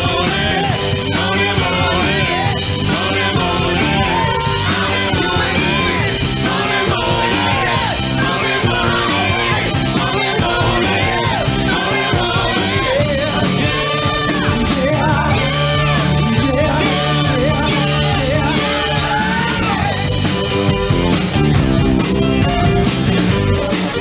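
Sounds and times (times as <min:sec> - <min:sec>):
person singing: 0:00.0 - 0:20.0
rock and roll band music: 0:00.0 - 0:24.0.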